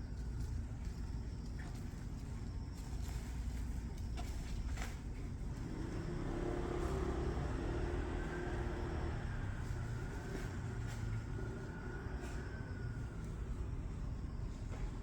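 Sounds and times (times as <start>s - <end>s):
road traffic rumble: 3.4s - 15.0s
vehicle engine: 4.2s - 15.0s.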